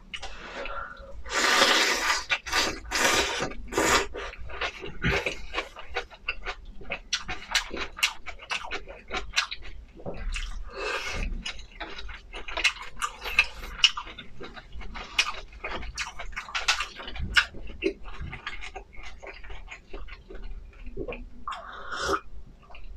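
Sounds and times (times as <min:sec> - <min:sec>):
slurp: 0:01.3 - 0:04.1
wet chewing with mouth smacks: 0:02.3 - 0:22.9.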